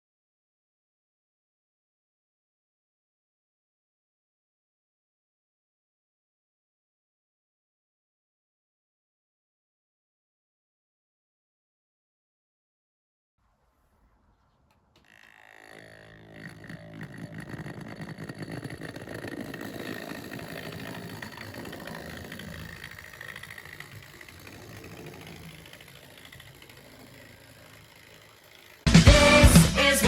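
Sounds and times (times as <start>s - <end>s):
model train motor and wheels: 13.4s - 30.0s.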